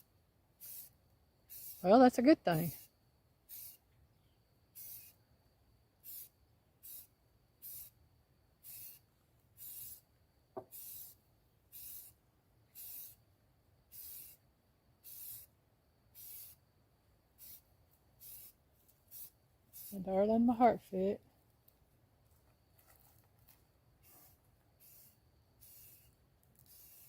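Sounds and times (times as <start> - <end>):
spray paint can hissing: 0.6 - 1.9, 3.5 - 3.8, 4.8 - 5.2, 6.0 - 8.0, 8.6 - 9.0, 9.6 - 10.0, 10.6 - 13.2, 13.9 - 14.4, 15.0 - 15.5, 16.1 - 16.6, 17.4 - 17.6, 18.2 - 20.0, 24.0 - 27.0.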